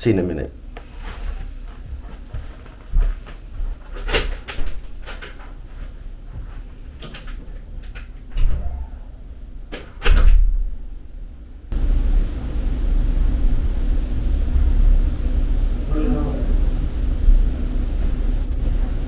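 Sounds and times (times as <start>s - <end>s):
door closing thud: 8.3s - 9.0s, 9.7s - 10.6s.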